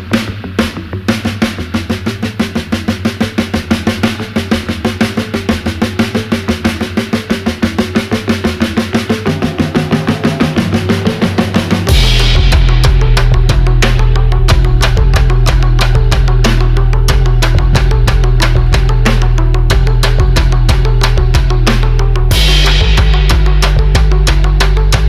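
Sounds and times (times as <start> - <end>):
fast drum beat: 0.0 - 25.0
moving bass line: 5.0 - 25.0.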